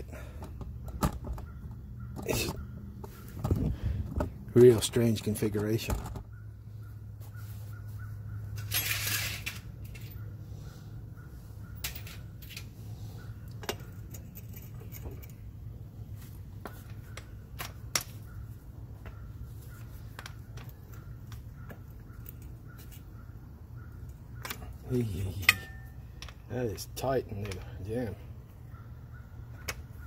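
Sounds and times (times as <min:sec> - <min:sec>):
hand tools clinking on metal: 0:08.5 - 0:10.2, 0:24.4 - 0:27.8.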